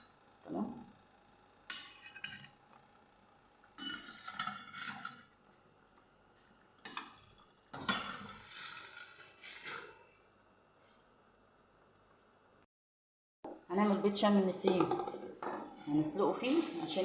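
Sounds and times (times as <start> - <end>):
utensils clinking against pot: 3.8 - 5.2.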